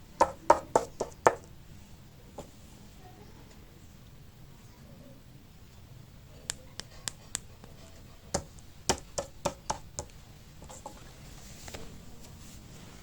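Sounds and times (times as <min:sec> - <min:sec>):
hard toys clicking and tapping: 0:06.5 - 0:11.0.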